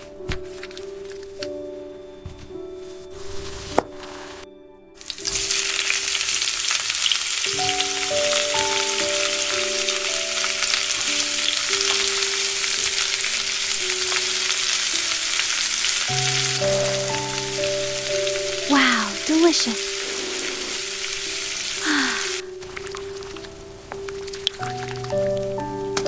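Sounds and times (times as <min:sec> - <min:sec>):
soft melody: 0:00.0 - 0:26.0
food sizzling in a pan: 0:05.0 - 0:26.0.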